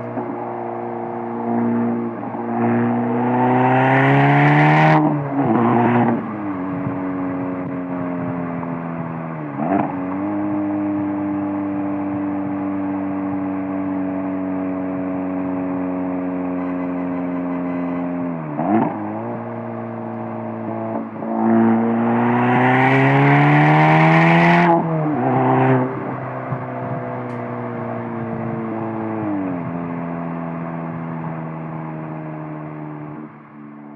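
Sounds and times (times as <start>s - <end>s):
car exhaust cruising: 0.0s - 33.9s
engine revving hard: 2.5s - 6.2s, 21.3s - 26.1s.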